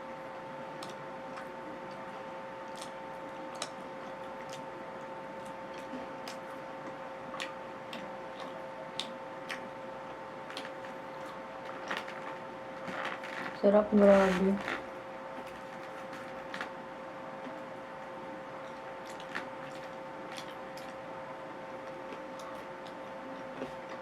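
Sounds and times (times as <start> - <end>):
low electrical hum: 0.0 - 24.0
mouth clicks and smacks chewing: 2.7 - 12.3.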